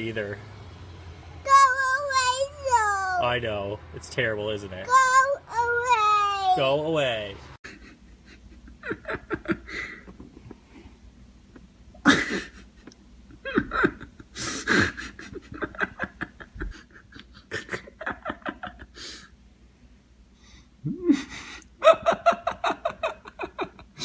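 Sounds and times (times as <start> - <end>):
people laughing: 7.7 - 10.6, 12.1 - 19.2, 21.0 - 24.0.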